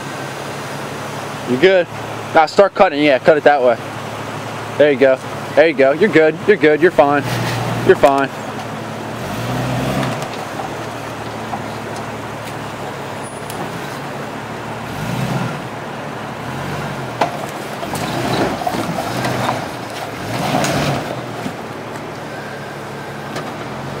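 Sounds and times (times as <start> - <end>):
engine revving: 1.1 - 24.0.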